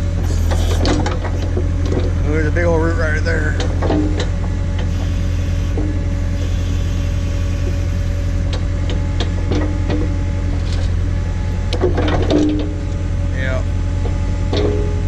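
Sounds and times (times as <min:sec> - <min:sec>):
tractor engine running: 0:00.0 - 0:15.0
machine clicks and knocks: 0:03.5 - 0:04.9, 0:11.7 - 0:12.8, 0:14.5 - 0:15.0.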